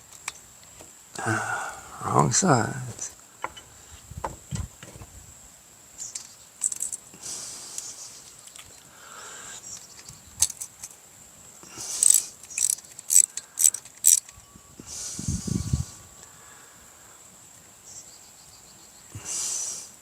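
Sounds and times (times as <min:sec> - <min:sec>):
sharp metallic clicks: 0:12.0 - 0:14.5.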